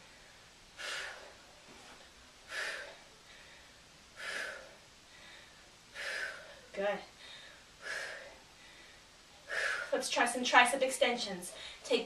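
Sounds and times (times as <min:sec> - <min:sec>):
woman breathing out forcefully: 0:00.0 - 0:01.4, 0:02.5 - 0:10.0.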